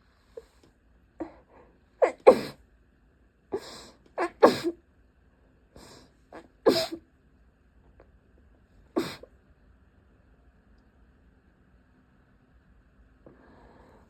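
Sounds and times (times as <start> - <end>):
person sneezing: 2.0 - 2.6, 3.6 - 4.8, 6.4 - 7.0, 9.0 - 9.3.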